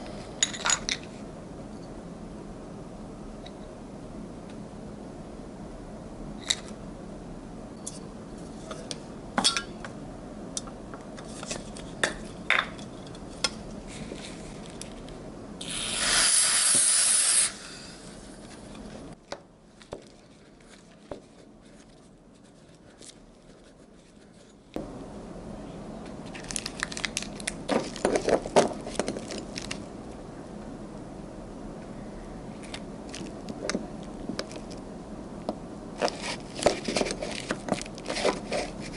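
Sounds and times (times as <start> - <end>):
spray hissing: 15.6 - 18.0.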